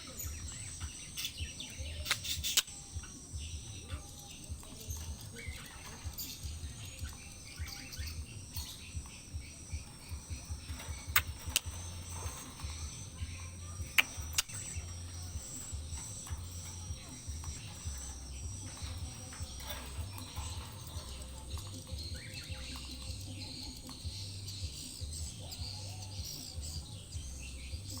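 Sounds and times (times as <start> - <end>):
sharp clicks: 0.0 - 25.5
birds chirping: 0.0 - 28.0
steady high hiss: 0.0 - 28.0.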